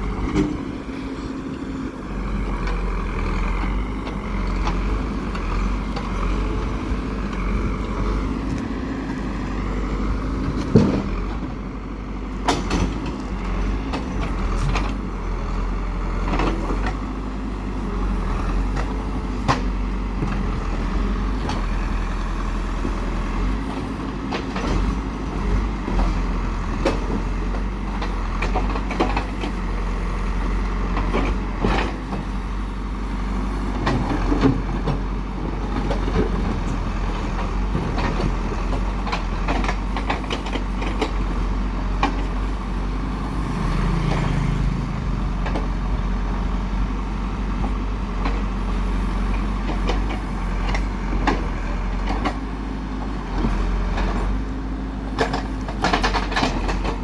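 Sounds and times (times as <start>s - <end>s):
diesel engine running: 0.0s - 57.0s
knocks and clanks: 10.5s - 11.5s.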